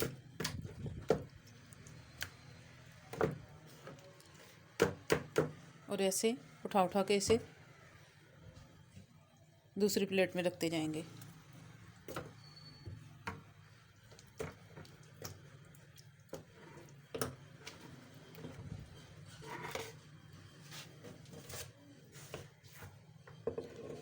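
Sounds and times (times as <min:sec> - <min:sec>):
soft wet squishes: 0:13.7 - 0:18.4.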